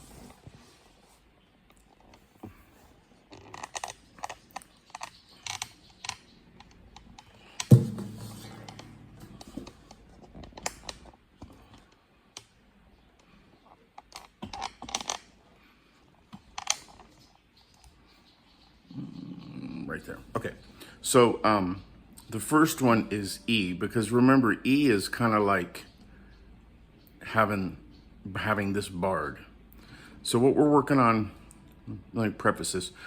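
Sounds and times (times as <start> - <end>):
low ringing note: 7.7 - 10.0.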